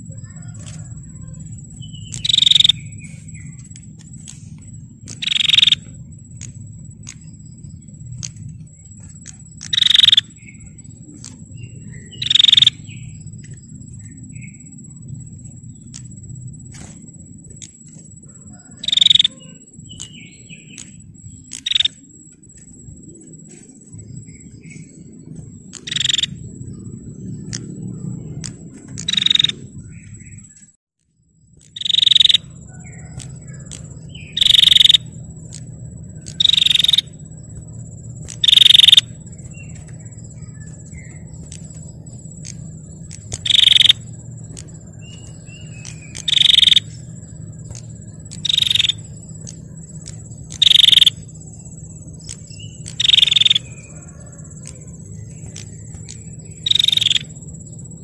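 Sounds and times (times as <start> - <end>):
steady low hum: 0.0 - 58.0
thin high whine: 0.0 - 58.0
bird calling in loud bursts: 43.1 - 44.1.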